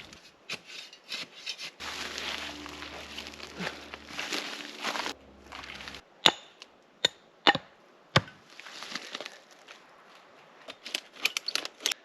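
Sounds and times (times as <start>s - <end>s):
wood rustling: 0.0s - 6.0s.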